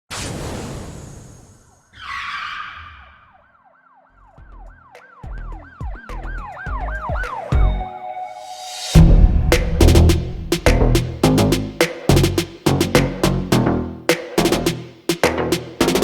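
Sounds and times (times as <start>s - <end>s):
rapid yelping siren: 1.9s - 7.8s
whoosh: 8.4s - 11.3s
deep bass hits: 9.0s - 13.7s.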